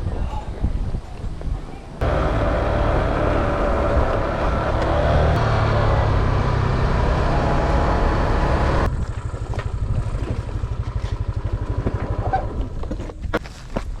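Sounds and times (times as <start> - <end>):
wind noise: 0.0 - 2.1
scooter engine putting: 2.0 - 13.2.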